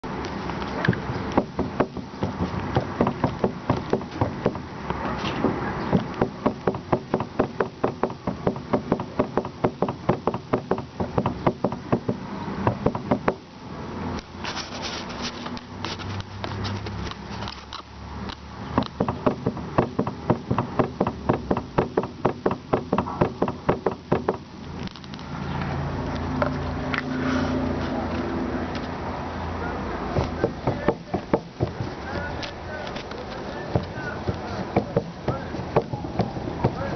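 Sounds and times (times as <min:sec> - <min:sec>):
steering rack knocking: 0:00.8 - 0:04.7, 0:05.4 - 0:13.4, 0:18.8 - 0:24.5, 0:30.1 - 0:32.6, 0:33.2 - 0:36.9.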